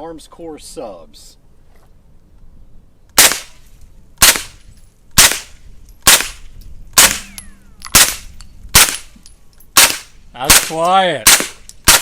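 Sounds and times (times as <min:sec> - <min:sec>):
suppressed gunshots: 0:03.2 - 0:03.6, 0:04.2 - 0:04.6, 0:05.2 - 0:09.2, 0:09.8 - 0:12.0.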